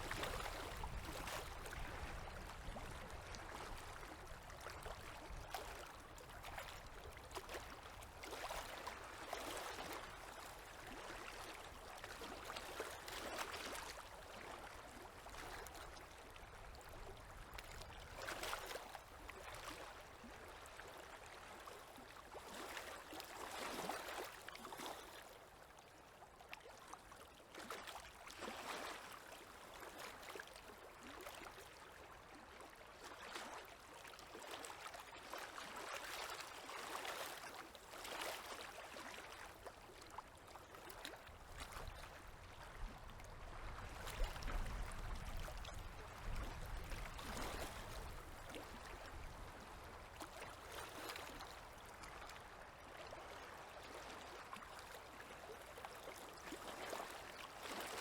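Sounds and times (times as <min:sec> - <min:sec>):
small waves lapping at shore: 0:00.0 - 0:58.0.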